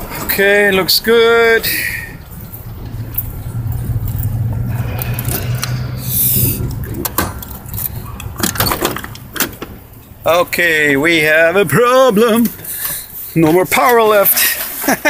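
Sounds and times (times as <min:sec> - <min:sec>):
truck starter cranking engine: 0:00.0 - 0:13.3.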